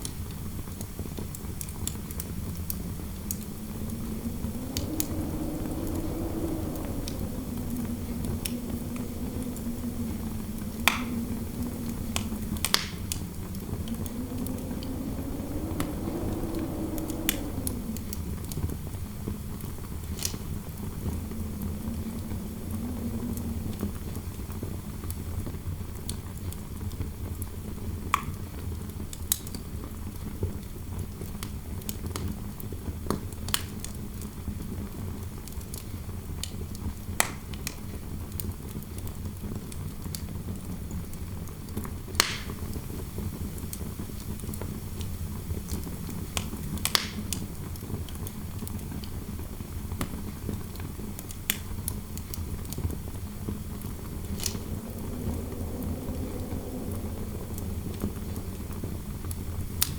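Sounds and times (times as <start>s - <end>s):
fire crackling and popping: 0.0s - 25.2s, 40.9s - 59.9s
wind howling: 1.0s - 25.5s, 42.0s - 59.9s
low rumble: 1.8s - 25.0s, 52.9s - 59.9s.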